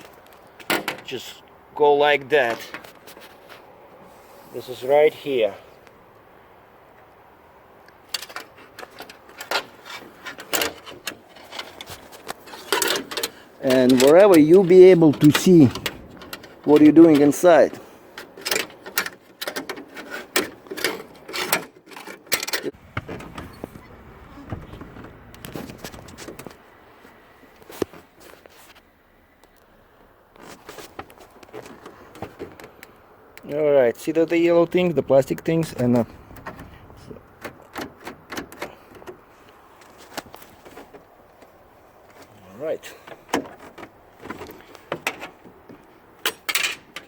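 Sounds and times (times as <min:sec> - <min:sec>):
wire hook scraping on car door: 0:08.1 - 0:23.9.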